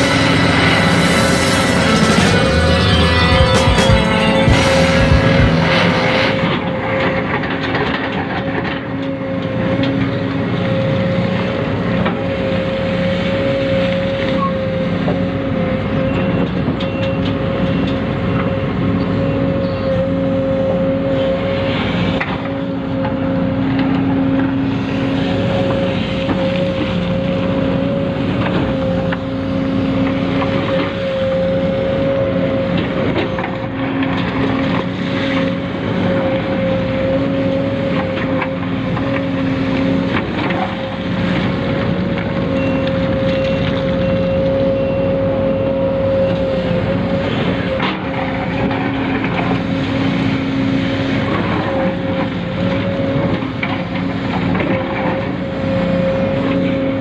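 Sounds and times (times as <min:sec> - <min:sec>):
electric motor whine: 0:00.0 - 0:06.6.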